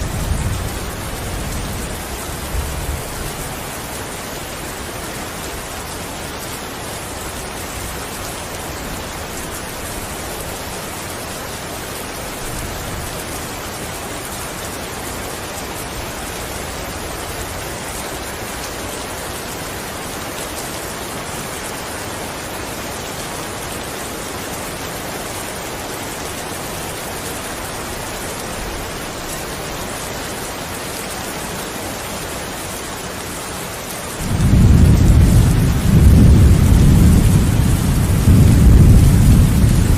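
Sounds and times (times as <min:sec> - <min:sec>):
heavy rain falling: 0:00.0 - 0:39.9.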